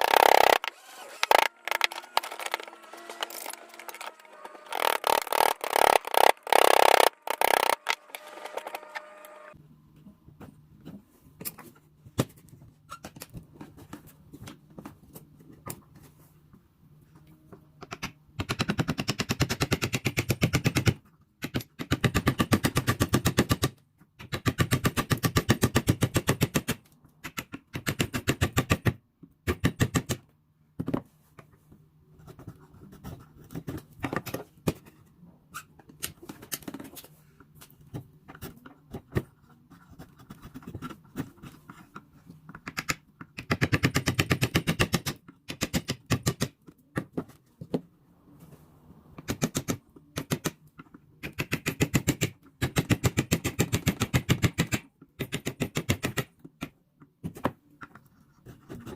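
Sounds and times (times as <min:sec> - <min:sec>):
mechanical hammering: 0:00.0 - 0:09.5
clicks and scrapes: 0:00.0 - 0:09.6.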